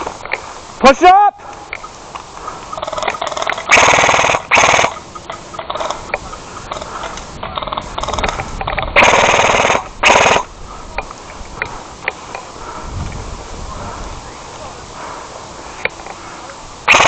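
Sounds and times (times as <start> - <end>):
airsoft rifle bursts: 2.8 - 5.0, 9.0 - 10.5.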